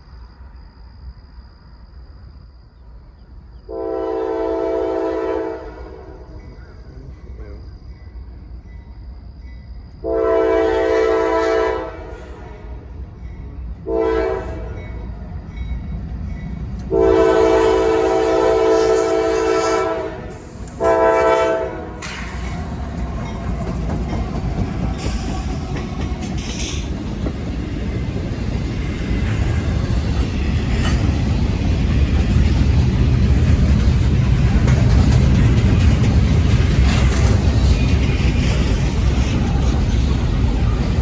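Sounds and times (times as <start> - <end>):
train wheels rumbling on rail: 0.0 - 41.0
locomotive horn: 3.7 - 6.3, 10.0 - 12.8, 13.8 - 14.8, 16.8 - 22.1
train clicks: 5.3 - 41.0.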